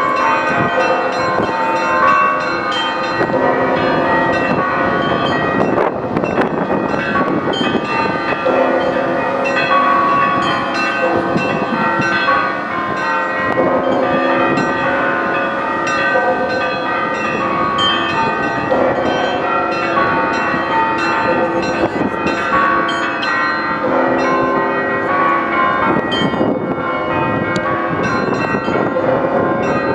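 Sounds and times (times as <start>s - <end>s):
church bells pealing: 0.0s - 29.9s.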